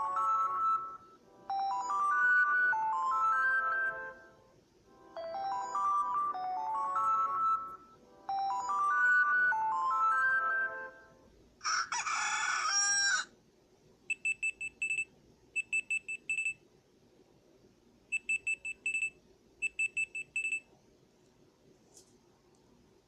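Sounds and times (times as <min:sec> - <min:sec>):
melodic chime: 0:00.0 - 0:04.2, 0:05.1 - 0:11.0
recorded rooster crowing: 0:11.6 - 0:13.4.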